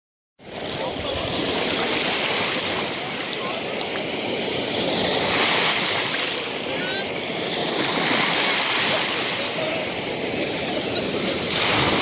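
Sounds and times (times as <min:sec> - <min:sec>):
surf washing onto sandy beach: 0:00.4 - 0:12.0.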